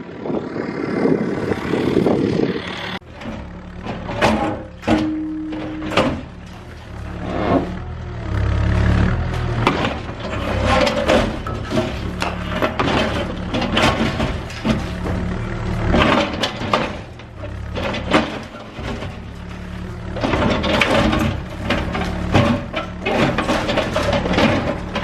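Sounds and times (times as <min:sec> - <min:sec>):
excavator diesel engine under load: 0:00.0 - 0:25.0
concrete cracking and crunching: 0:09.1 - 0:25.0.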